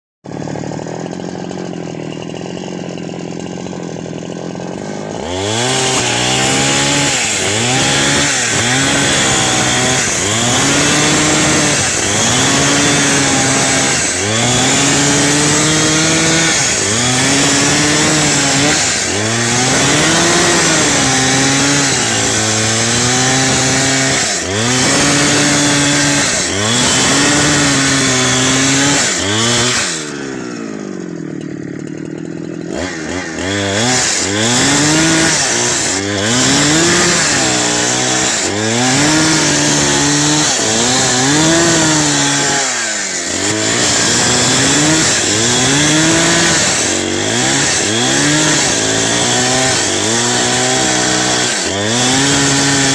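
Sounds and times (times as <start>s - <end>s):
chainsaw idling and revving: 0.2s - 52.9s.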